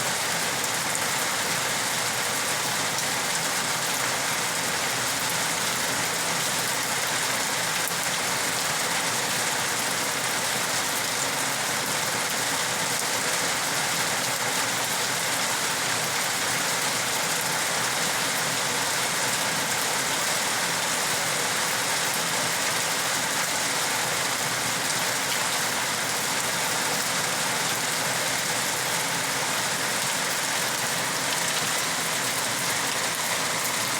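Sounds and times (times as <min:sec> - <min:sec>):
rain falling steadily: 0:00.0 - 0:33.9.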